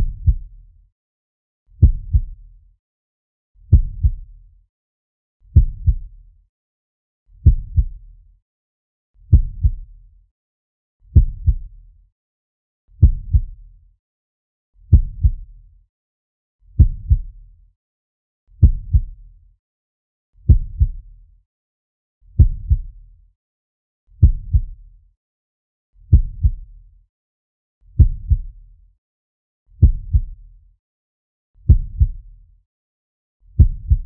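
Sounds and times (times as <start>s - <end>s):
heartbeat thumps: 0.0s - 0.4s, 1.8s - 2.4s, 3.7s - 4.2s, 5.6s - 6.1s, 7.4s - 8.0s, 9.3s - 9.8s, 11.2s - 11.6s, 13.0s - 13.6s, 14.9s - 15.4s, 16.8s - 17.3s, 18.6s - 19.2s, 20.5s - 21.0s, 22.4s - 22.9s, 24.2s - 24.8s, 26.1s - 26.6s, 28.0s - 28.5s, 29.8s - 30.4s, 31.7s - 32.2s, 33.6s - 34.0s.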